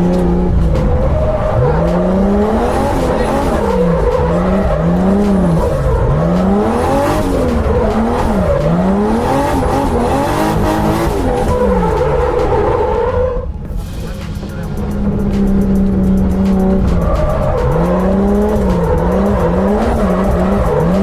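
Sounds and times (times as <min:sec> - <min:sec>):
car engine revving: 0:00.0 - 0:21.0.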